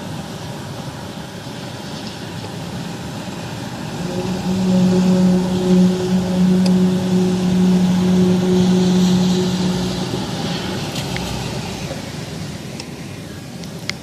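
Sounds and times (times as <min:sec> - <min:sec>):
low droning hum: 0:03.8 - 0:12.8
rushing noise: 0:03.9 - 0:12.8.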